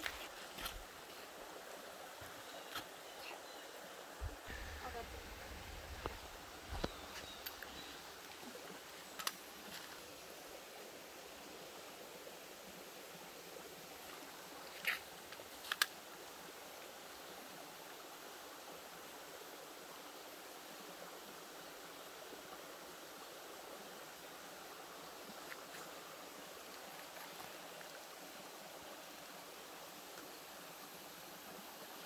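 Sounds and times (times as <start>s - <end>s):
creek water running: 0.0s - 32.0s.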